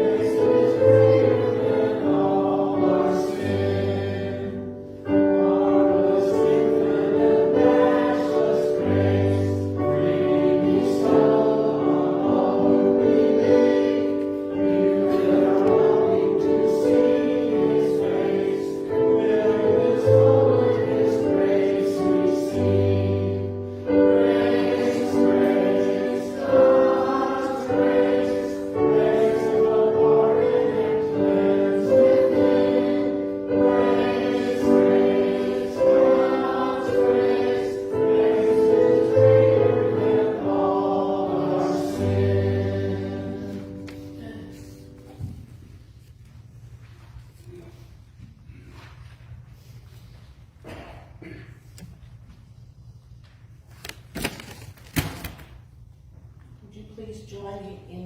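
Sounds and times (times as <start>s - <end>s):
choir singing a hymn: 0.0s - 46.2s.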